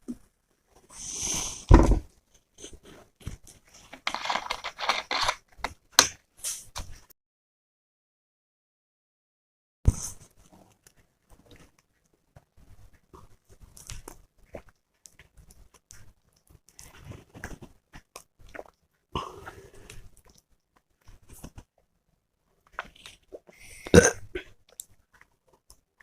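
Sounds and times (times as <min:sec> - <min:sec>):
person gulping drink: 0:22.8 - 0:24.9.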